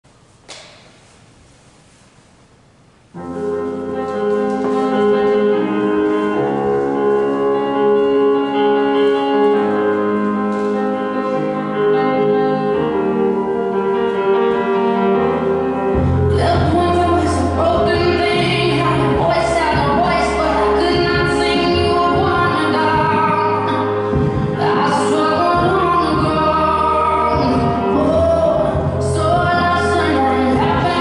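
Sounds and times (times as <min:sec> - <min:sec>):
instrumental music with held notes: 0:03.2 - 0:31.0
deep bass: 0:15.3 - 0:31.0.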